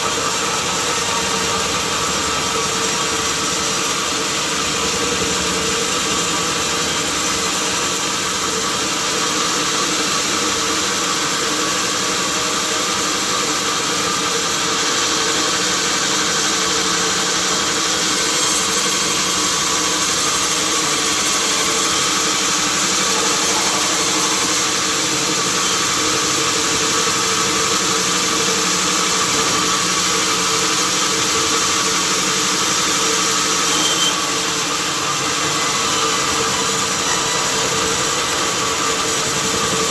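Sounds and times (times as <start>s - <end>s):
sawmill motor hum: 0.0s - 39.9s.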